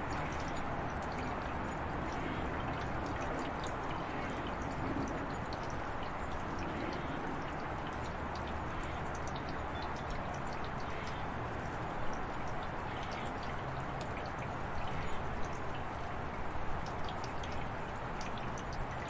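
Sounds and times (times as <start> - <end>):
small scattered drips: 0.0 - 19.0
water running and trickling: 0.0 - 19.0.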